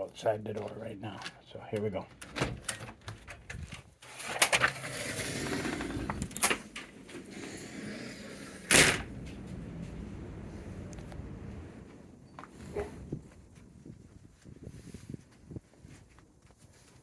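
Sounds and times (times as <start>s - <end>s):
door unlatching and opening: 2.2s - 3.0s, 4.4s - 9.7s
loud bang: 8.6s - 11.8s.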